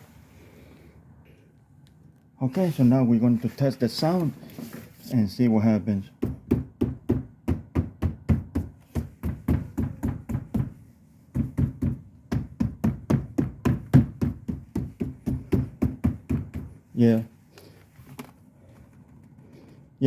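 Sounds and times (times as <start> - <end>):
hand knocking on car door panel: 6.2 - 16.8.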